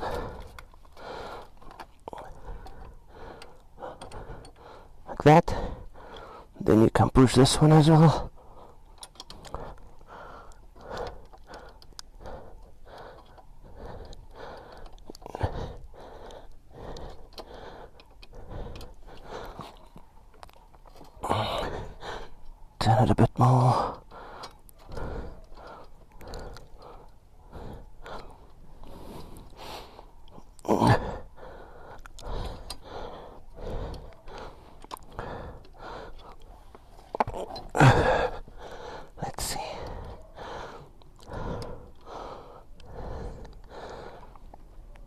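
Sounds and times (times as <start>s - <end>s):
tools clicking and scraping: 0.0s - 4.6s, 8.9s - 15.3s.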